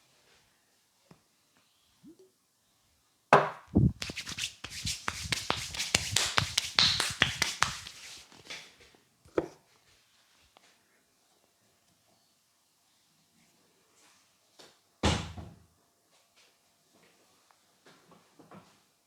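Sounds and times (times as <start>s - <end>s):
hand slaps of head massage: 3.4s - 8.2s.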